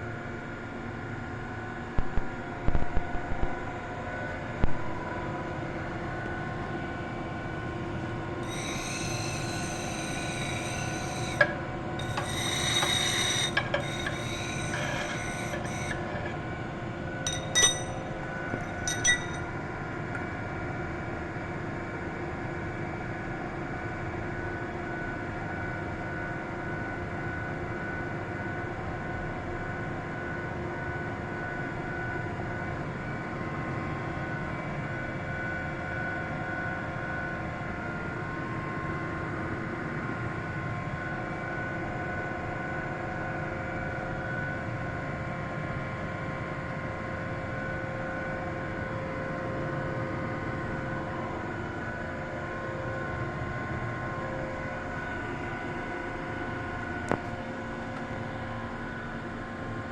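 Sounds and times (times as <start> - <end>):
grinder machine hum: 8.4 - 19.5
sharp metallic clinks: 17.3 - 19.5.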